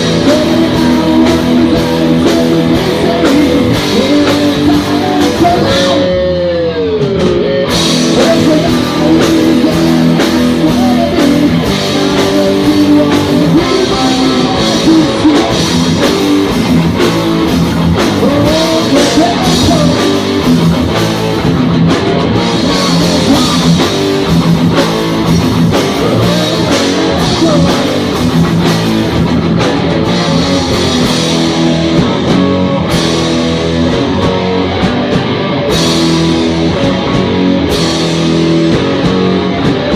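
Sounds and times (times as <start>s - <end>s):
person singing: 0.0s - 20.8s, 22.3s - 28.9s
heavy metal band playing live: 0.0s - 39.9s.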